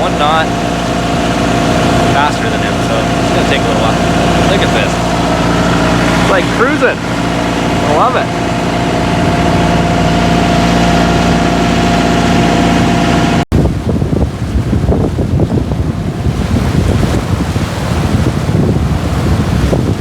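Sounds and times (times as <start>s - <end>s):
boat engine droning: 0.0s - 20.0s
water rushing past hull: 0.0s - 20.0s
wind buffeting microphone: 0.0s - 20.0s.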